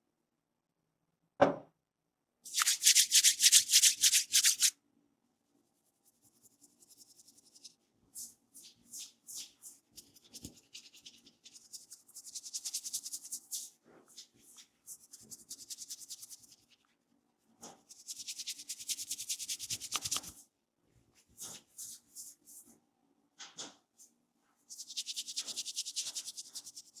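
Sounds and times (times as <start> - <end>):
hands rubbing oiled hair: 2.5 - 4.7, 6.4 - 14.3, 17.9 - 20.4, 24.7 - 27.0.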